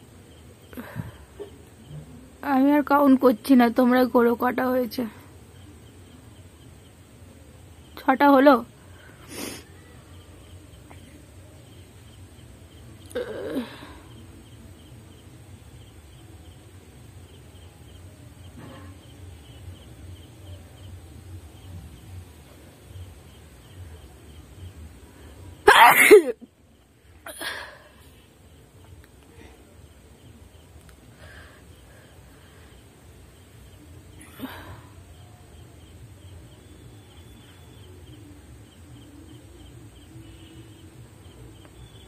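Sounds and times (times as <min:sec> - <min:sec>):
woman sneezing: 0:25.7 - 0:26.4.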